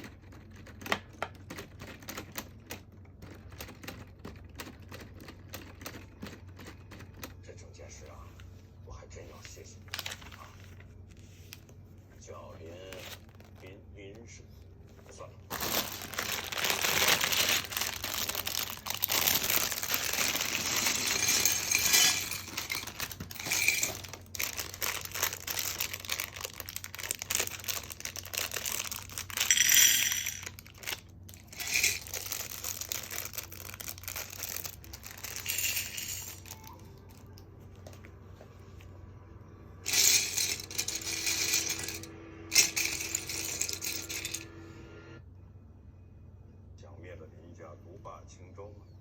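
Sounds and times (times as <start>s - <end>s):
plastic bricks clattering: 15.5s - 36.5s, 39.9s - 44.4s.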